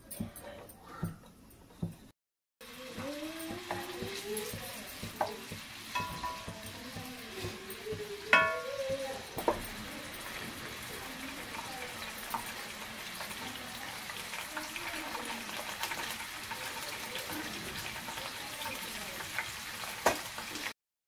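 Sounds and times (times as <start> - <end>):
food sizzling in a pan: 2.6 - 20.8
metal clink: 6.0 - 6.7, 8.4 - 9.7.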